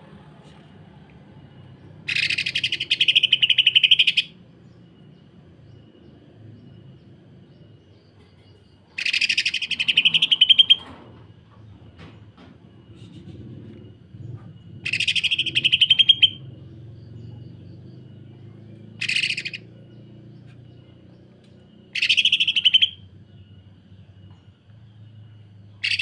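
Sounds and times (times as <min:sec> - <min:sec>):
bird harsh rapid chatter: 0:02.0 - 0:04.3, 0:08.9 - 0:10.8, 0:14.8 - 0:16.4, 0:19.0 - 0:19.7, 0:21.9 - 0:23.0.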